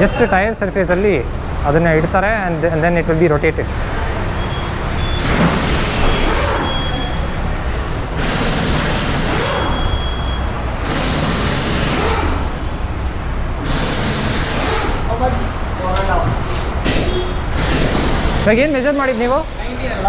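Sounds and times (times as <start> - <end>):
low hum of machinery: 0.0 - 20.0
compressed air hissing: 4.6 - 15.1, 16.8 - 20.0.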